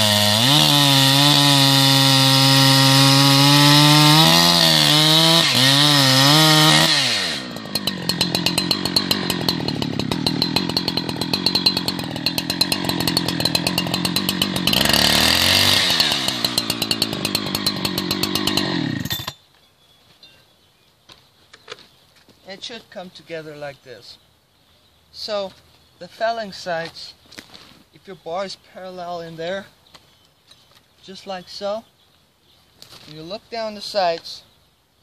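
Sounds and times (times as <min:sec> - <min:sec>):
chainsaw cutting and idling: 0:00.0 - 0:19.4.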